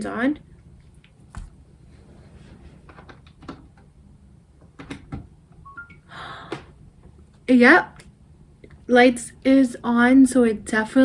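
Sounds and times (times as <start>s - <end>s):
short beeps: 5.7s - 6.1s.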